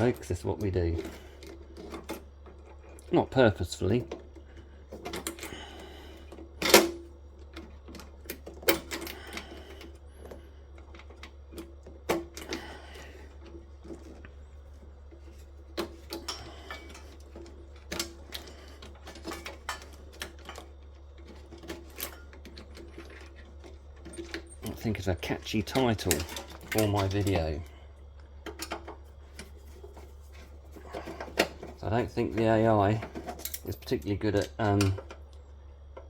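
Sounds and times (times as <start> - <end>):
hand tools clicking and scraping metal: 0.0 - 35.2.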